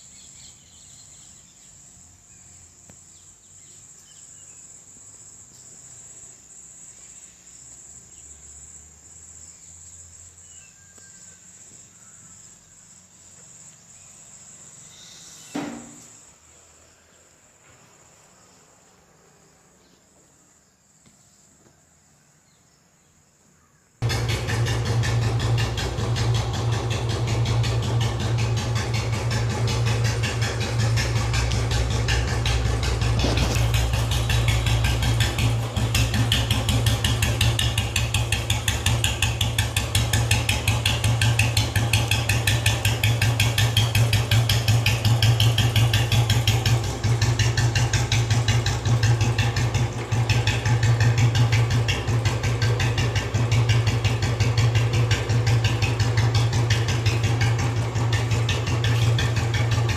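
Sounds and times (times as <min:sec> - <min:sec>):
motorcycle engine idling: 0:24.0 - 0:59.9.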